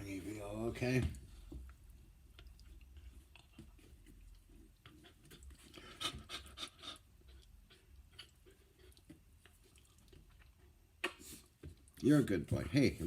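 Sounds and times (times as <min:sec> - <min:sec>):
dog panting: 0:01.3 - 0:11.7.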